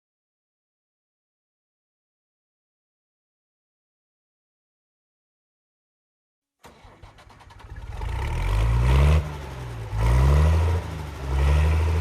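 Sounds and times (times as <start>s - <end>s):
diesel engine cranking and revving: 6.6s - 12.0s.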